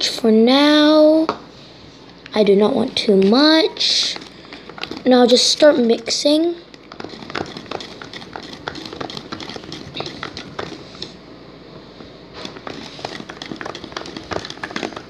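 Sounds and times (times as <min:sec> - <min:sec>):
slime stirred with pencil clicking: 0:02.3 - 0:11.2, 0:12.4 - 0:15.0.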